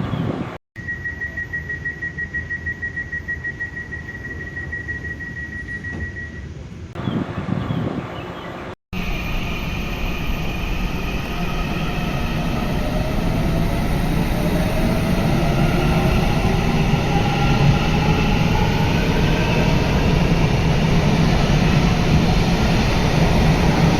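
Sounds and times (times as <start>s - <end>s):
electric train motor whine: 9.0s - 23.9s
train rumble: 9.0s - 23.9s.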